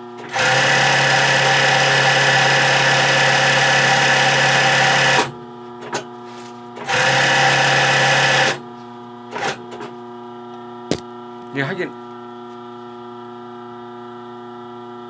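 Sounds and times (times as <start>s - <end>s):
sewing machine stitching: 0.2s - 5.3s.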